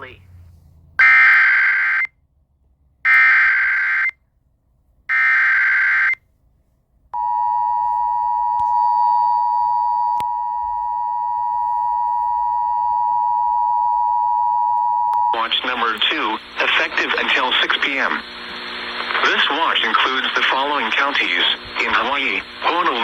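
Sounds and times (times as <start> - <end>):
two-tone alarm: 1.0 - 2.1.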